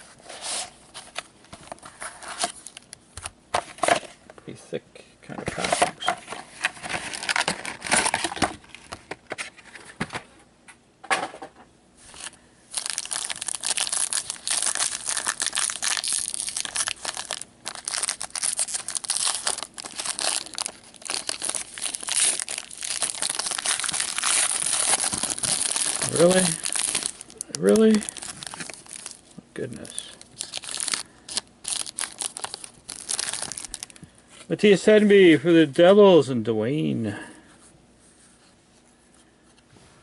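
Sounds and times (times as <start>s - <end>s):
wrapper tearing and crinkling: 6.9s - 8.4s, 12.1s - 34.0s.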